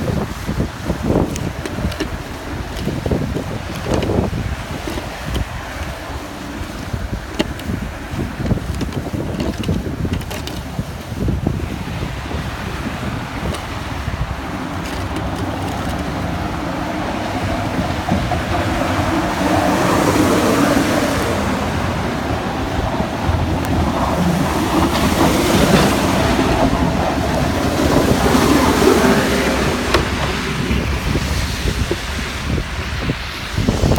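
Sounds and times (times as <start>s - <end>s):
trucks rumbling past: 0.0s - 33.9s
wind noise on microphone: 0.0s - 33.9s.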